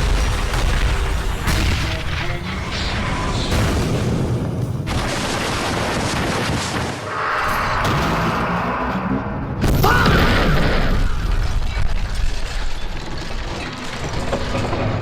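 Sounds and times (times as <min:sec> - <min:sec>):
heavy hit: 0:06.9 - 0:11.4
mechanical rattling and clanking: 0:11.3 - 0:15.0.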